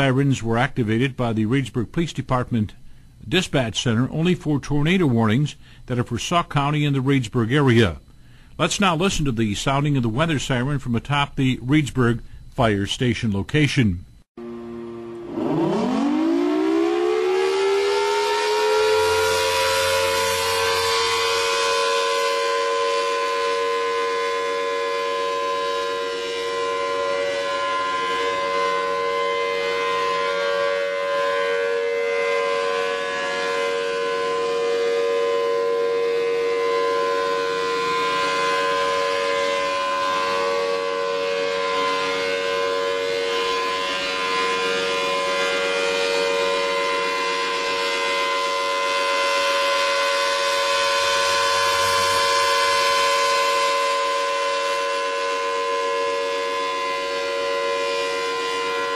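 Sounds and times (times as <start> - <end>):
warning siren steady tone: 13.4 - 58.9.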